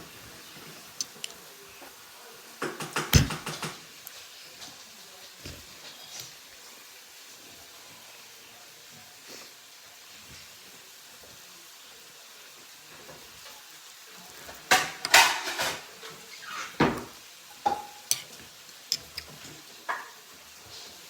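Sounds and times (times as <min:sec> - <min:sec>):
dishes and utensils clattering: 0:02.6 - 0:03.8, 0:14.4 - 0:20.2.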